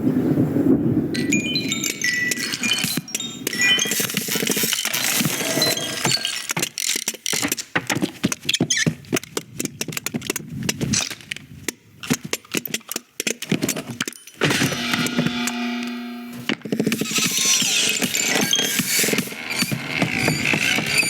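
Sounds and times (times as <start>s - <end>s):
clicks and rattles of small objects: 1.2s - 15.2s
steady pitched buzz: 14.5s - 21.0s.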